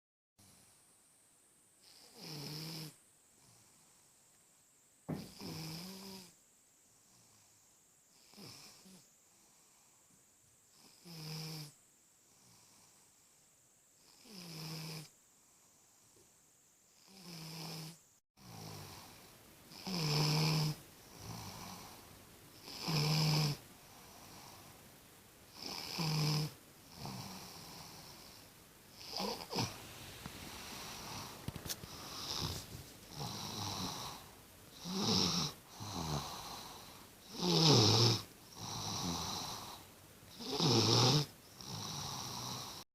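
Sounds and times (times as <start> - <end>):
baby snoring: 1.8 - 3.6, 5.1 - 6.4, 8.2 - 9.1, 10.8 - 11.8, 14.0 - 15.1, 17.0 - 24.7, 25.5 - 42.9.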